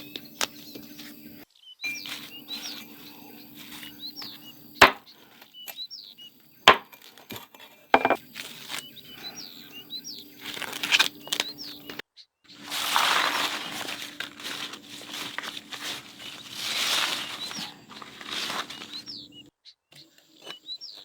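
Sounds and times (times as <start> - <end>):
small birds chirping: 0.0 - 21.0
sharp knocks: 4.8 - 5.0, 6.7 - 6.9, 8.0 - 8.2.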